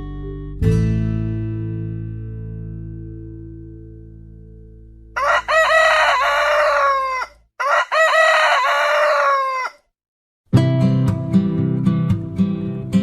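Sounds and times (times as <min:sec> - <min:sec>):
rooster crowing: 0:05.2 - 0:09.9.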